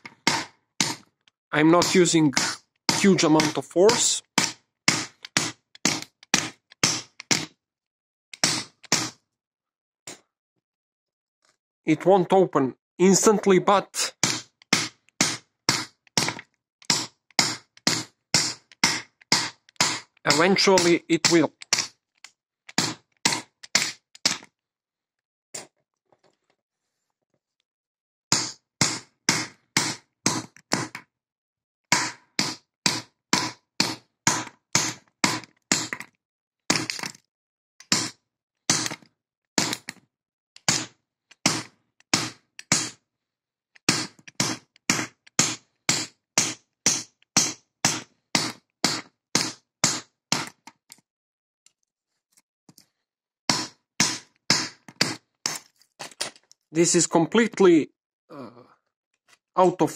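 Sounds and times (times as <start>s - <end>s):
wrench striking padlock: 36.7s - 37.2s, 38.7s - 40.0s.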